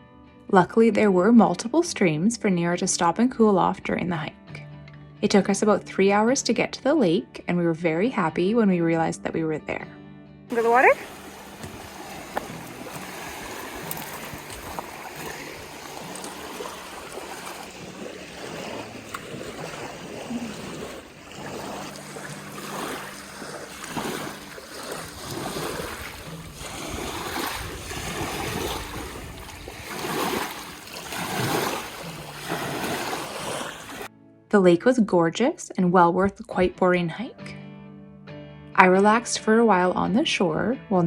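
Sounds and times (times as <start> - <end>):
water splashing at lake shore: 10.5 - 34.1.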